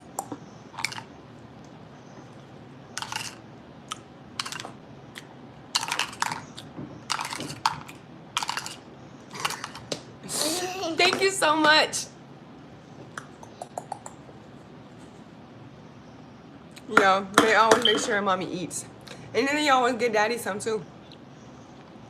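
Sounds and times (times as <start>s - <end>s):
small hard objects clicking: 3.0s - 4.7s, 5.8s - 8.8s.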